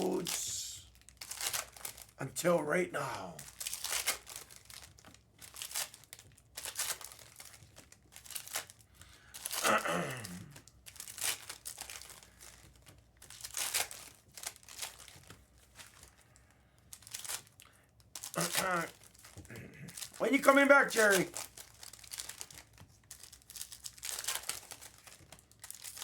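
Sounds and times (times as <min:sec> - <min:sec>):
foil wrappers tearing and crinkling: 0:00.0 - 0:02.2, 0:03.4 - 0:26.0
short falling vocal sound: 0:09.6 - 0:10.5.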